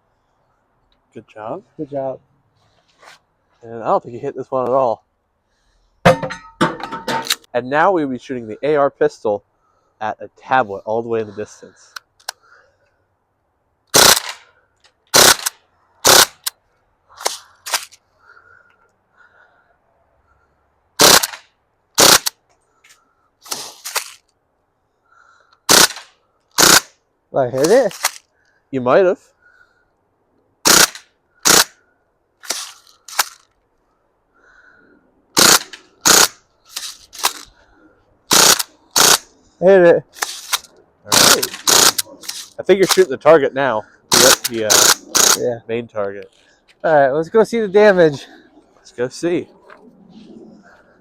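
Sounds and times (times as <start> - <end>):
bb pistol shots: 13.9 - 14.4, 15.1 - 16.4, 21.0 - 21.4, 22.0 - 22.3, 25.7 - 26.9, 30.6 - 31.7, 35.4 - 36.4, 41.1 - 42.1.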